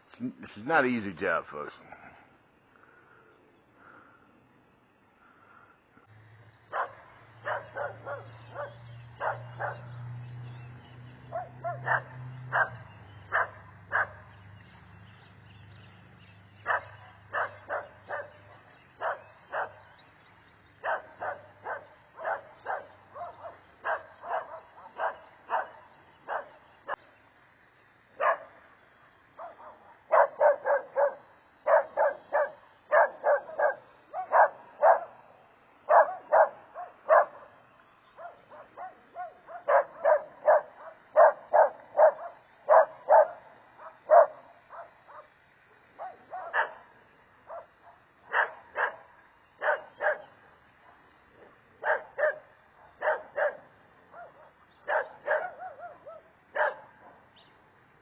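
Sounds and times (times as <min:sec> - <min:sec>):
dog barking: 0:06.7 - 0:09.9, 0:11.3 - 0:14.2, 0:16.6 - 0:19.8, 0:20.8 - 0:26.6, 0:28.2 - 0:28.6, 0:29.4 - 0:35.3, 0:35.9 - 0:37.6, 0:38.2 - 0:45.4, 0:46.0 - 0:46.9, 0:47.5 - 0:57.3.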